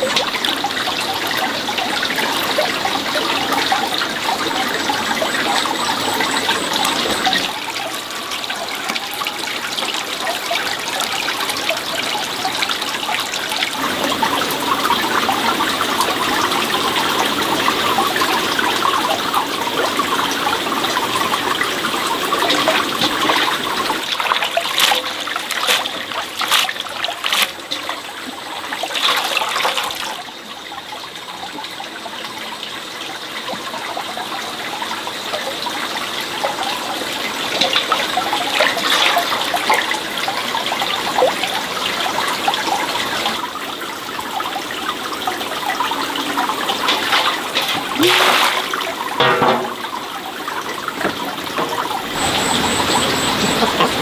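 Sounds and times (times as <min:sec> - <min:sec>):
water running and splashing: 0:00.0 - 0:54.0.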